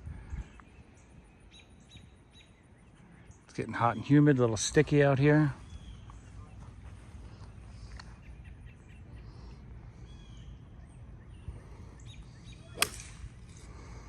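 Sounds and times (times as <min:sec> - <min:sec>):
birds chirping: 0:00.0 - 0:14.0
outdoor background noise: 0:00.0 - 0:14.0
golf club striking ball: 0:12.6 - 0:13.6.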